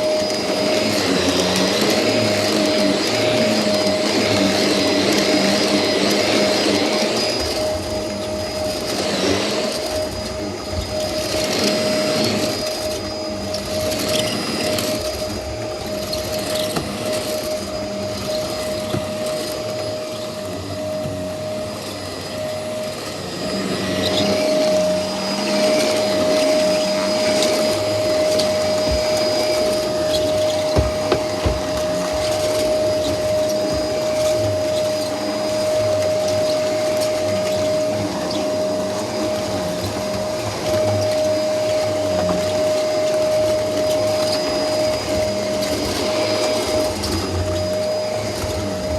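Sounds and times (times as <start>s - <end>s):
vacuum cleaner running: 0.0s - 48.9s.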